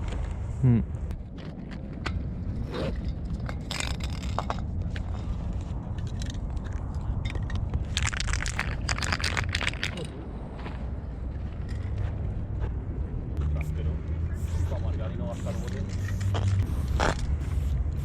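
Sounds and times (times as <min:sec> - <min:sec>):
low outdoor rumble: 0:00.0 - 0:18.0
rapid clicking and scraping: 0:01.3 - 0:10.1.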